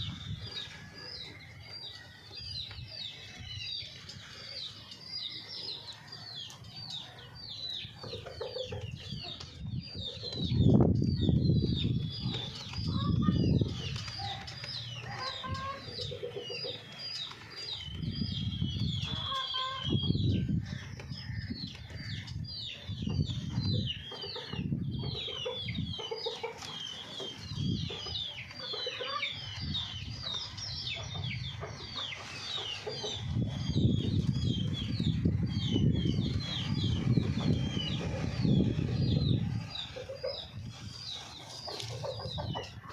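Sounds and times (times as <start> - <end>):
hens clucking: 37.3 - 42.9.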